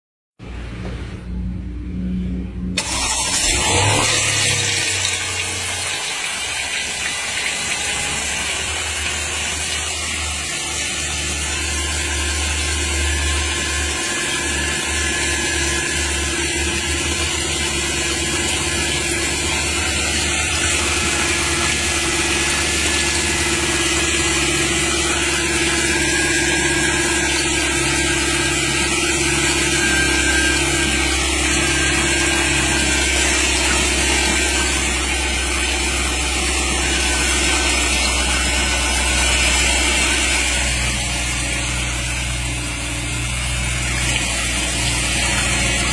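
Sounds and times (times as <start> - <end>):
car engine running: 20.4 - 23.8
constant whining tone: 20.5 - 23.9.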